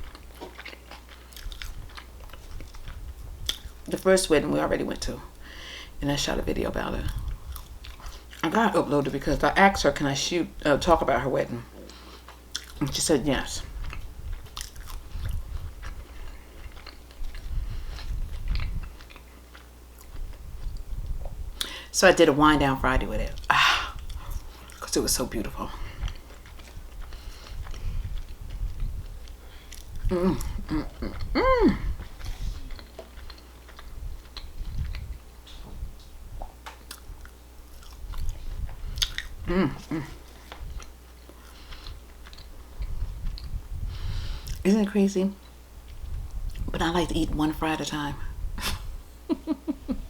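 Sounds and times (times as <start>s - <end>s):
person chewing food: 0.0s - 3.9s, 7.0s - 8.4s, 11.7s - 12.9s, 13.6s - 21.7s, 23.3s - 24.8s, 25.8s - 44.7s.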